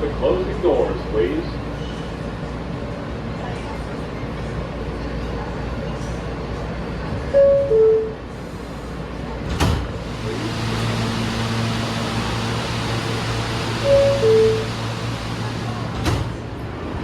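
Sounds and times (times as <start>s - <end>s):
sliding doors shutting thud: 9.5s - 16.5s
two-tone door chime: 13.8s - 15.0s.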